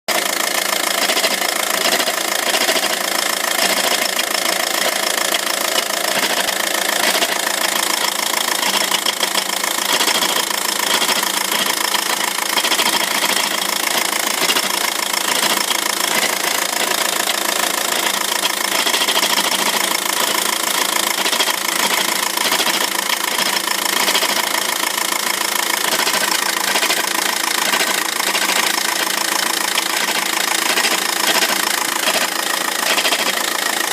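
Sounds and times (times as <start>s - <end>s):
diesel engine running: 0.1s - 33.9s
flywheel rattling: 25.8s - 33.9s.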